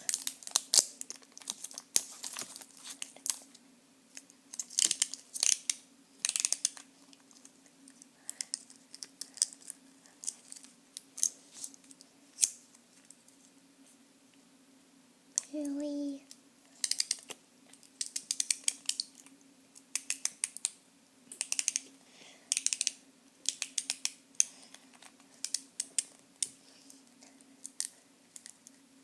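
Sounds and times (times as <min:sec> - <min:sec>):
packaging crinkling and tearing: 0:00.0 - 0:03.5
faint steady hum: 0:00.0 - 0:29.0.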